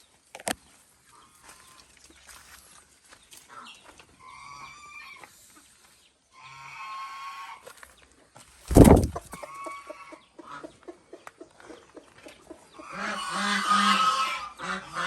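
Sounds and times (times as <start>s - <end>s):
poultry calling: 12.8s - 15.0s.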